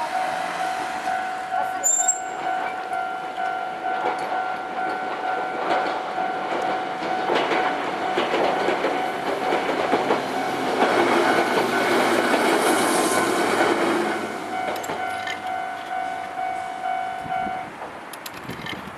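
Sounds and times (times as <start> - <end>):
level crossing bell ringing: 0.0 - 7.4, 14.5 - 17.7
train wheels clattering on rails: 0.0 - 18.9.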